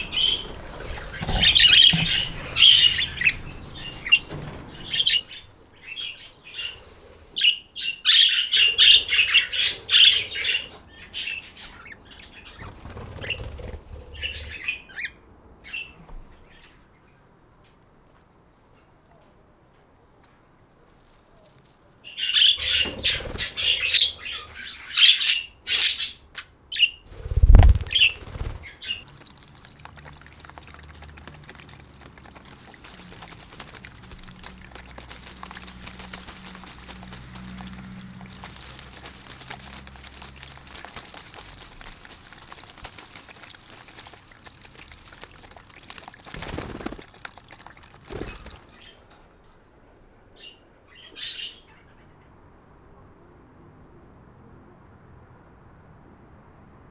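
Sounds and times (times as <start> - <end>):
budgerigars chirping: 0.0 - 5.4
wings flapping: 0.0 - 5.4, 8.2 - 10.8, 12.6 - 14.5, 20.9 - 24.7, 27.1 - 49.0.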